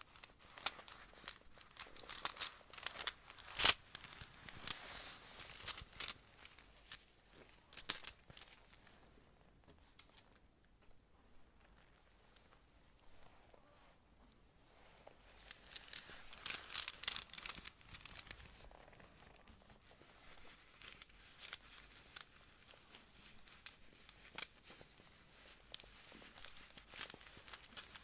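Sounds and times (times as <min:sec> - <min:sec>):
rune pieces scratching and clicking: 0:00.1 - 0:07.0, 0:07.7 - 0:08.8, 0:15.4 - 0:28.0.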